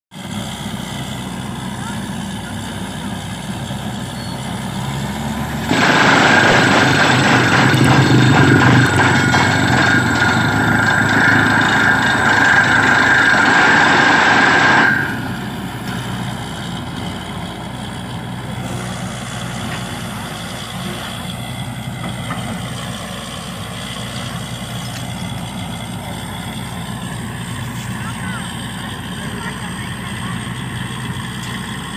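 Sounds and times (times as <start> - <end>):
heavy diesel engine and compressor: 0.1 - 31.9
loud rushing with whistle: 9.7 - 15.4.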